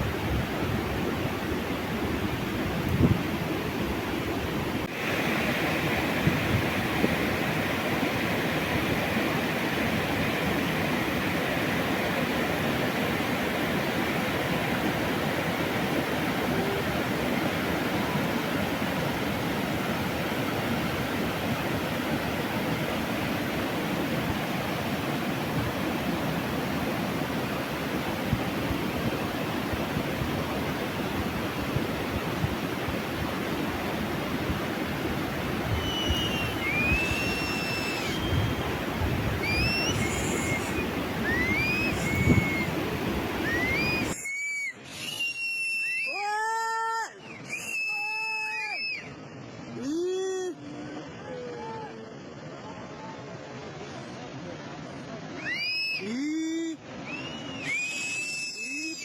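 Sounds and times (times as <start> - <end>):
floodwater rushing: 0.0 - 44.2.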